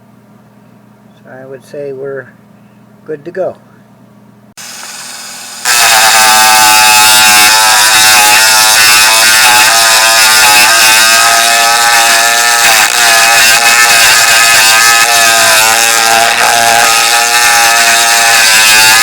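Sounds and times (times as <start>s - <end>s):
electric grinder whining: 4.6s - 19.0s.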